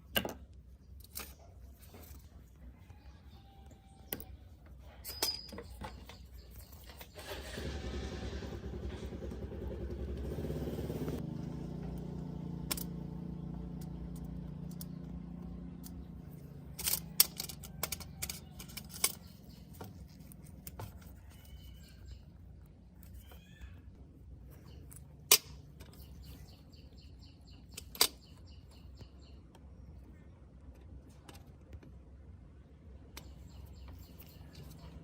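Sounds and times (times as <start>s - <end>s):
small motor running: 7.2s - 15.9s.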